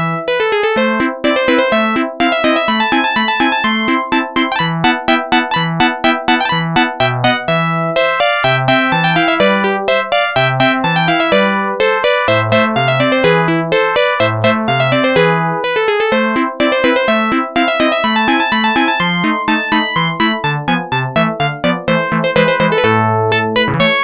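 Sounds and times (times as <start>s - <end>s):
synth ringtone tune: 0.3s - 24.0s
synth bass line: 2.9s - 9.7s, 17.8s - 24.0s.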